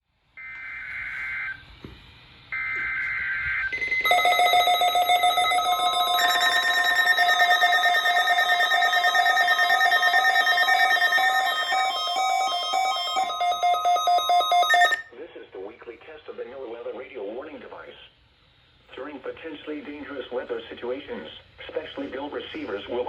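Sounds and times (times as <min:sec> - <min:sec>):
warbling digital data tones: 0:03.3 - 0:15.0
steady electronic alert tone: 0:03.7 - 0:15.0.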